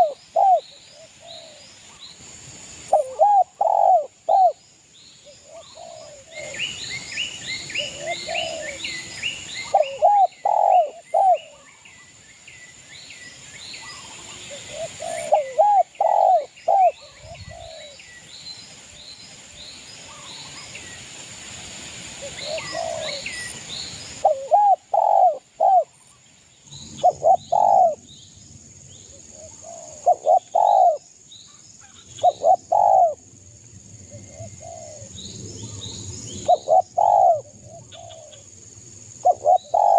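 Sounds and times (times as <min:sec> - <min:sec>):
dove cooing: 0:00.0 - 0:01.6, 0:02.9 - 0:04.6, 0:05.4 - 0:06.7, 0:07.7 - 0:09.0, 0:09.6 - 0:11.6, 0:14.3 - 0:18.0, 0:22.2 - 0:23.3, 0:24.2 - 0:25.9, 0:27.0 - 0:28.0, 0:29.4 - 0:31.0, 0:32.2 - 0:33.2, 0:34.1 - 0:35.2, 0:36.4 - 0:38.4, 0:39.2 - 0:39.9
small bird chirping: 0:39.2 - 0:39.9.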